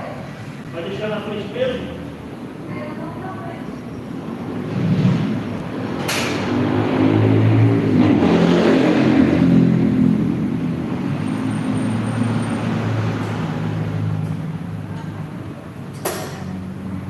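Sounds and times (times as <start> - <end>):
sharp clank: 16.0 - 16.5.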